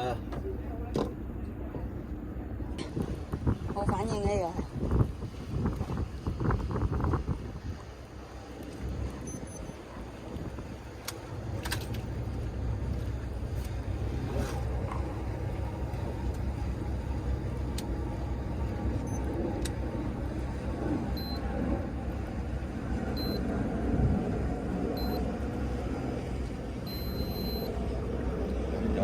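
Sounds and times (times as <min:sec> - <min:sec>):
boat engine humming: 0:00.0 - 0:29.0.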